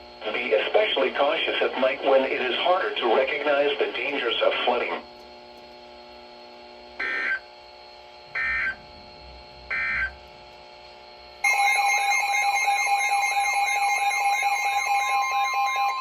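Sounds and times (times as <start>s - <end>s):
faint hum: 0.0s - 16.0s
digital data tone bursts: 7.0s - 7.4s
warbling alarm tone: 7.0s - 7.5s, 8.3s - 9.0s, 9.7s - 10.2s, 11.4s - 16.0s.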